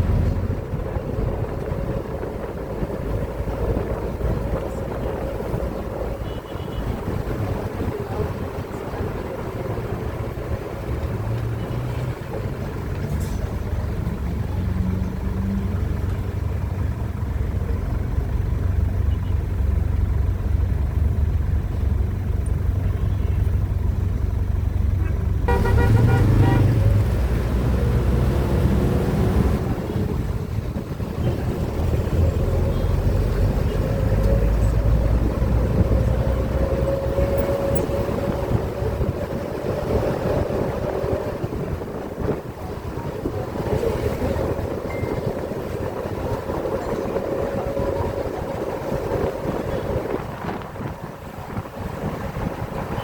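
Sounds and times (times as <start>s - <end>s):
street traffic rumble: 0.0s - 53.0s
car horn honking: 6.2s - 7.1s, 25.0s - 26.9s.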